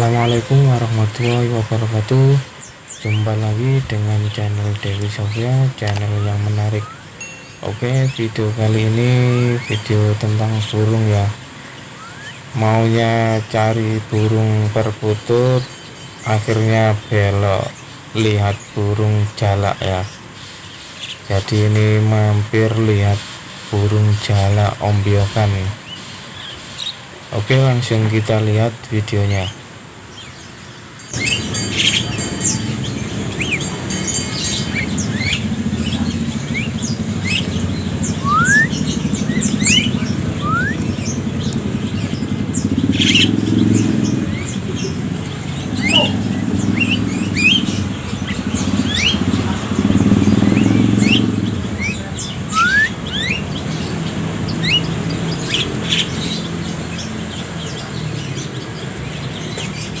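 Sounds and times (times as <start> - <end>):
mynas chirping: 0.0 - 60.0
low engine rumble: 31.1 - 58.2.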